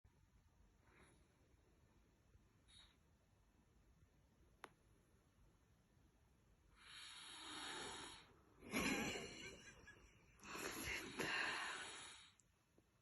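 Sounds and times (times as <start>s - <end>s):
person snoring: 6.8s - 8.3s, 10.5s - 12.4s.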